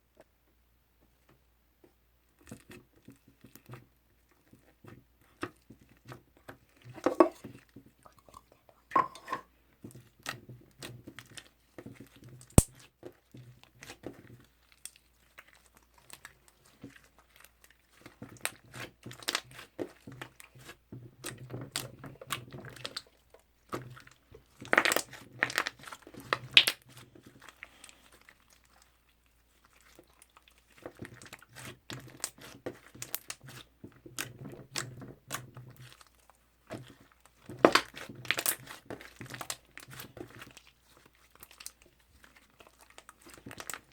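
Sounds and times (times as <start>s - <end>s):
sticky slime clicking and crackling: 10.0s - 43.9s.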